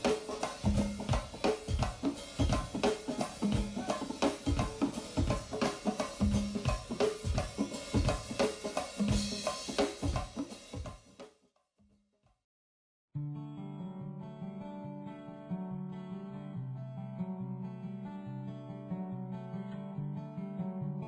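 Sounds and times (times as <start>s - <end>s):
fast drum kit beat: 0.0s - 11.2s.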